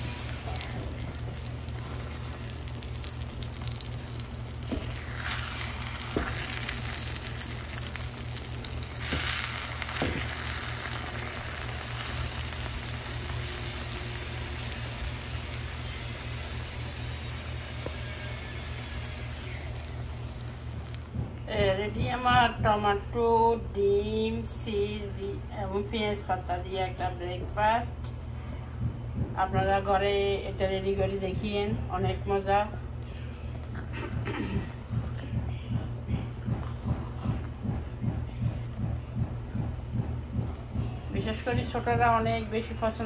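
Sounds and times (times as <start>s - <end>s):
food sizzling in a frying pan: 0.0s - 21.2s.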